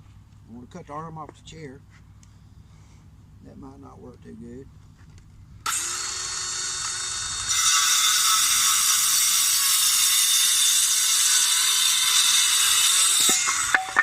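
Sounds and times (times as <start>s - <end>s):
power saw cutting plywood: 5.7s - 14.0s.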